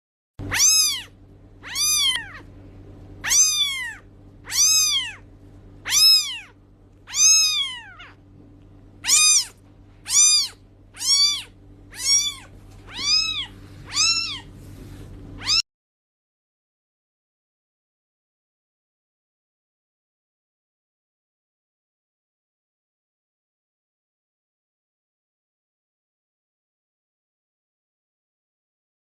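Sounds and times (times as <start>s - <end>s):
cat meowing: 0.4s - 2.5s, 3.2s - 8.2s, 9.0s - 14.5s, 15.4s - 15.6s
faint steady hum: 0.4s - 15.6s.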